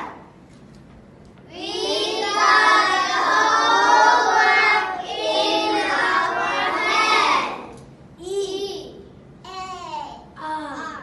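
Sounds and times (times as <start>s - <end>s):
children reciting in unison: 1.5s - 7.8s.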